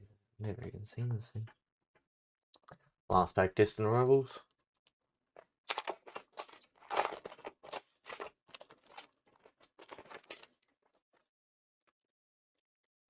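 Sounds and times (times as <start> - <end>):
foil pack tearing and crinkling: 5.7 - 10.9.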